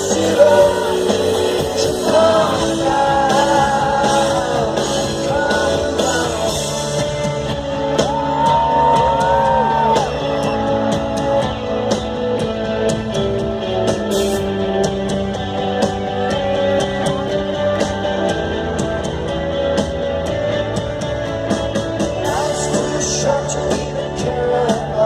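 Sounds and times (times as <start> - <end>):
rock band playing live: 0.0 - 25.0.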